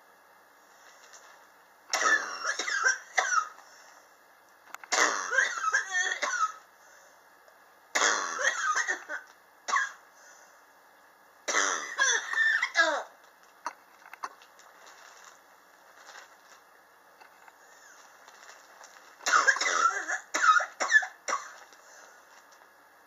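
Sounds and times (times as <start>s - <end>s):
person coughing: 1.9s - 3.6s, 4.9s - 6.6s, 8.0s - 10.0s, 11.5s - 13.1s, 19.2s - 21.6s.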